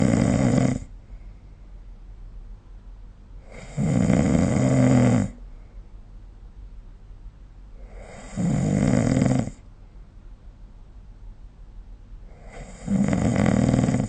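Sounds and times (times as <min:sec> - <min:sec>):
person snoring: 0:00.0 - 0:00.9, 0:03.4 - 0:05.4, 0:07.8 - 0:09.7, 0:12.3 - 0:14.0.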